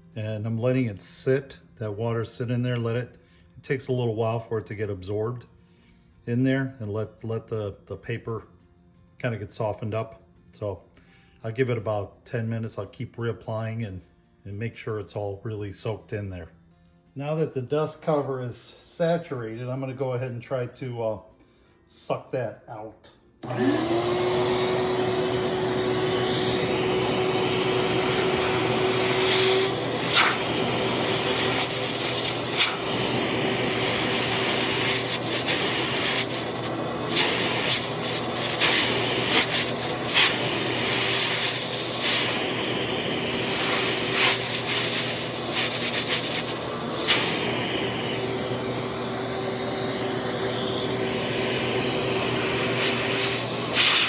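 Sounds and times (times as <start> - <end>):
vacuum cleaner motor running: 23.4 - 54.0
hissing suction surges: 23.5 - 54.0.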